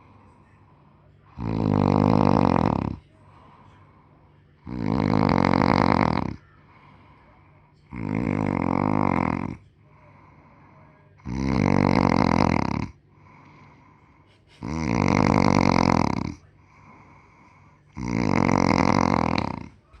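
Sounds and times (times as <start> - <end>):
quiet breathing: 0.0 - 20.0
loud snoring: 1.3 - 3.0, 4.6 - 6.4, 7.9 - 9.6, 11.2 - 13.4, 14.6 - 17.2, 17.9 - 19.8.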